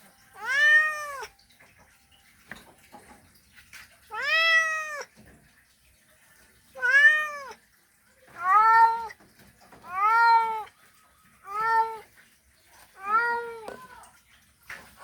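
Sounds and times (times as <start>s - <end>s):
cat meowing: 0.4s - 1.3s, 4.1s - 5.1s, 6.8s - 7.6s, 8.3s - 9.2s, 9.8s - 10.8s, 11.4s - 12.1s, 12.8s - 14.1s.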